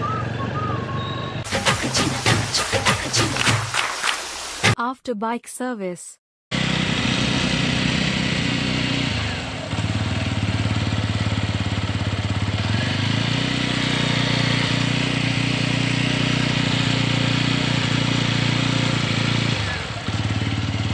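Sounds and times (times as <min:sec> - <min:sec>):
motorcycle engine running: 0:06.5 - 0:20.9.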